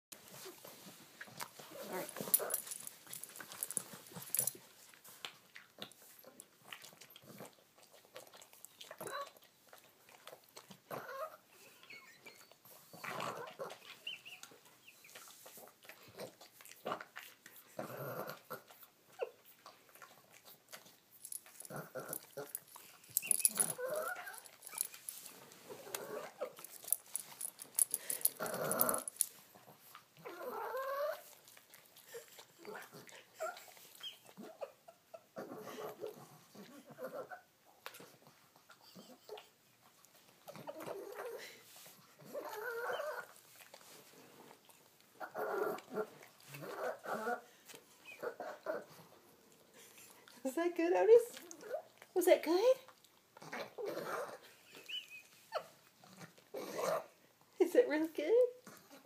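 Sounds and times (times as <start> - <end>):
dog whining and grumbling: 1.6 - 4.6, 10.9 - 14.6, 21.2 - 29.3, 30.2 - 31.4, 32.1 - 37.6, 40.5 - 41.6, 42.2 - 43.5, 45.2 - 49.2, 51.3 - 52.0, 53.4 - 57.2.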